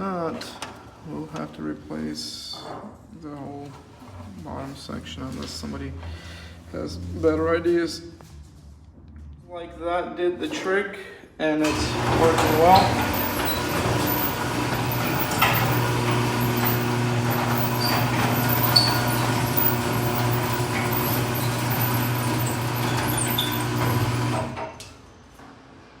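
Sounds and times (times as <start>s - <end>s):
garage door motor hum: 11.6s - 25.0s
garage door squeaks and clicks: 11.7s - 24.9s.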